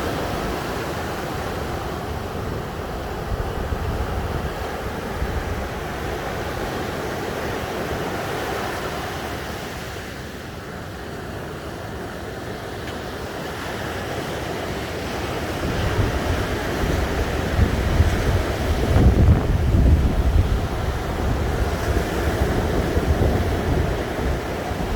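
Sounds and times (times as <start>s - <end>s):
wind rumble on microphone: 0.0s - 9.0s, 13.5s - 24.9s
ocean surf on beach: 0.0s - 24.9s.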